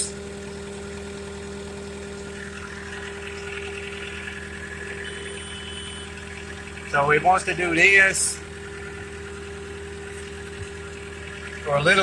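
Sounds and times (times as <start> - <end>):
diesel engine idling: 0.0 - 12.0
faint high-pitched tone: 4.8 - 6.2.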